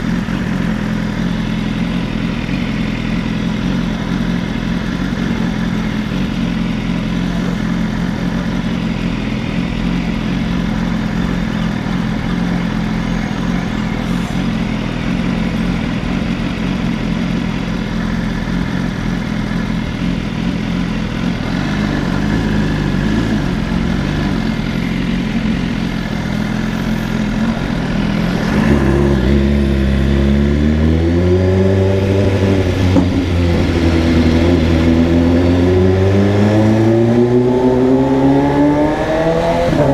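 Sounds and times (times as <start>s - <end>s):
motorcycle engine running: 0.0s - 39.9s
deep engine revving: 21.3s - 39.9s.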